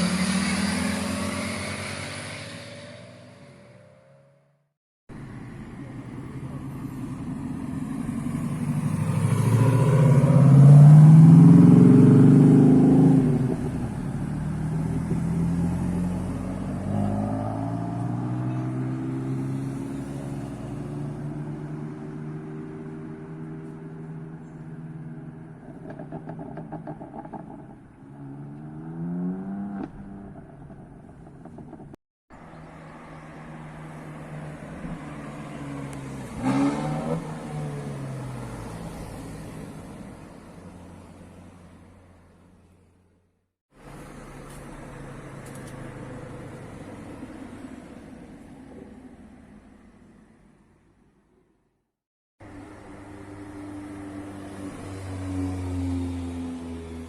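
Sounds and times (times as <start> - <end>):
car engines accelerating past: 0.0 - 4.0, 8.0 - 30.8, 32.6 - 40.1.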